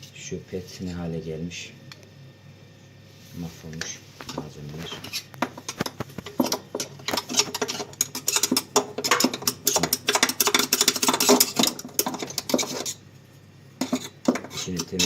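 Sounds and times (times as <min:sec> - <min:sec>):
rapid scratching and clicking: 0:04.2 - 0:13.0, 0:13.8 - 0:15.0.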